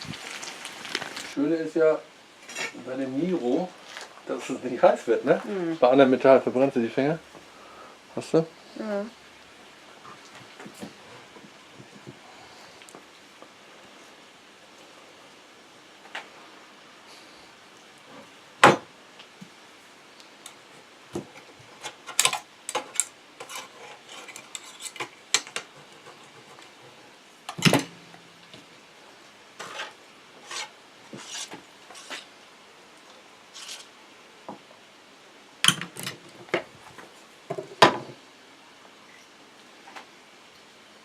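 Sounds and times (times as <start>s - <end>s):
metal scraping and clinking: 21.8s - 26.6s, 33.5s - 33.9s.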